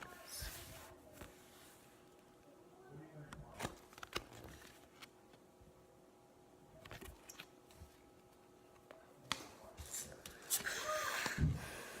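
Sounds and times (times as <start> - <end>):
cards clicking and rustling: 3.4 - 5.4.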